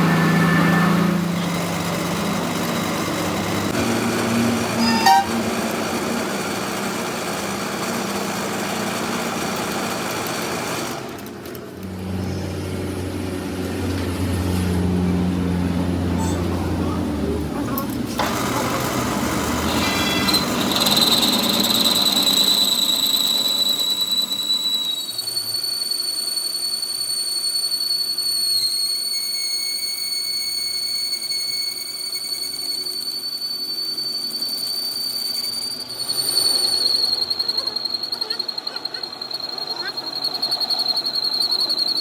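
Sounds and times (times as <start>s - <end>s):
grinding noise: 0.0s - 6.2s
machine squealing whine: 0.0s - 42.0s.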